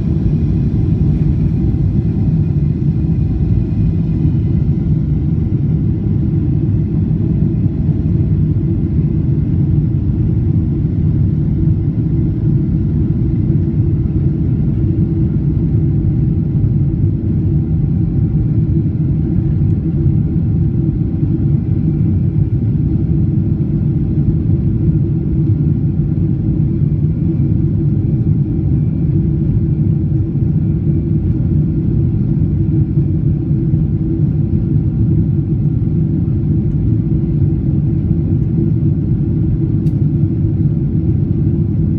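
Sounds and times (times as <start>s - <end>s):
jet engines and rushing air: 0.0s - 41.9s.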